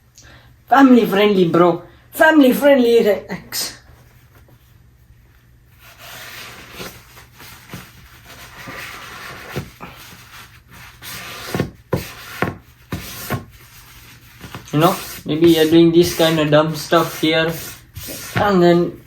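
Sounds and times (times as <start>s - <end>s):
rubbing and scraping on tabletop: 5.7s - 19.0s.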